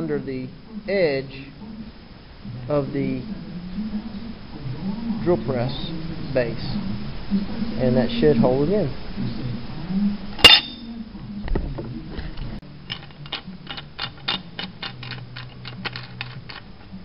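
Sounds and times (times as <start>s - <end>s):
metallic clank with ring: 10.4s - 10.9s.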